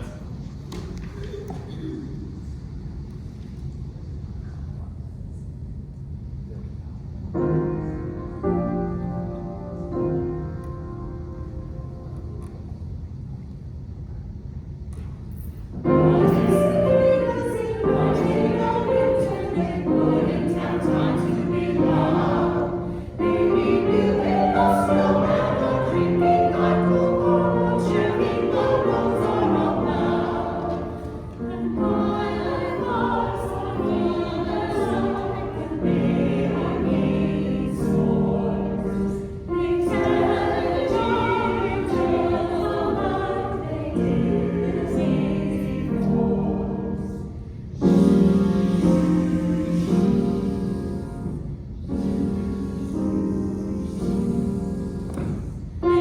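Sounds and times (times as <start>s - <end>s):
choir singing: 15.8s - 56.0s.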